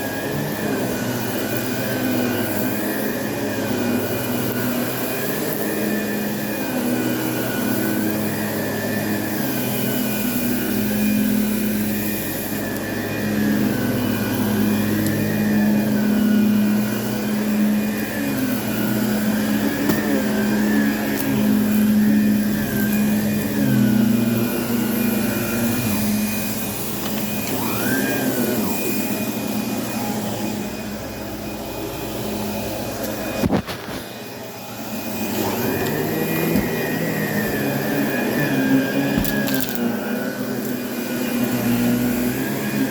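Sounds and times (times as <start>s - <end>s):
carpet cleaner motor whine: 0.0s - 42.9s.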